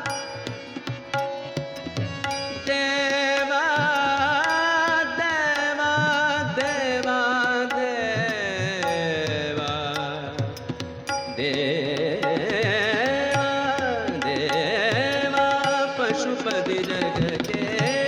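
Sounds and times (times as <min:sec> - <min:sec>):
tabla strokes: 0:00.0 - 0:18.0.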